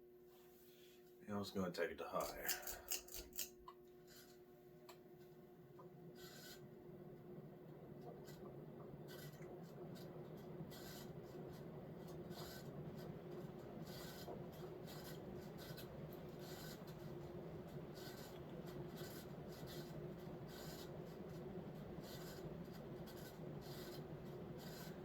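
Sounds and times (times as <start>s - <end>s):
ceiling fan humming: 0.0s - 25.0s
squeaking fan bearings: 9.0s - 9.4s, 12.3s - 12.7s, 17.9s - 19.9s, 24.6s - 25.0s.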